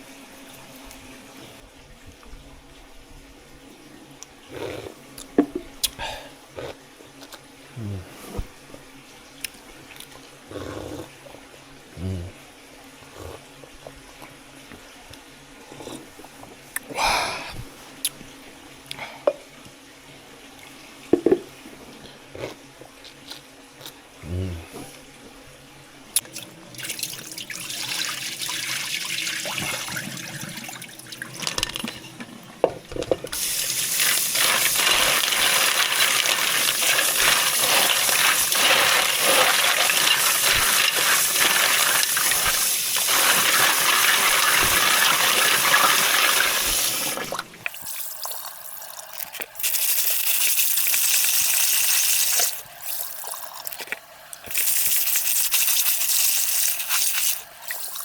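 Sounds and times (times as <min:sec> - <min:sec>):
tap water running into sink: 0:26.3 - 0:32.0, 0:32.6 - 0:49.0, 0:49.6 - 0:53.8, 0:54.5 - 0:58.0.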